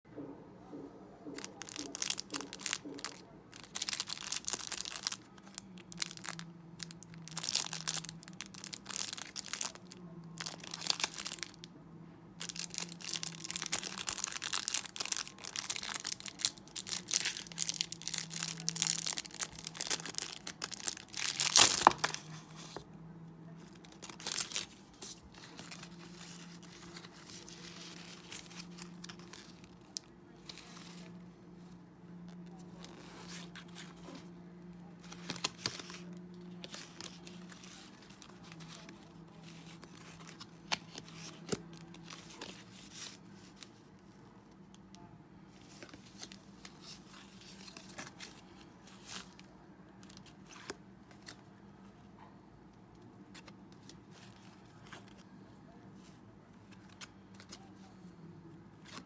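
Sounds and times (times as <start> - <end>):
foil wrapper crinkling and tearing: 1.4 - 11.6, 12.4 - 22.4, 23.6 - 31.0.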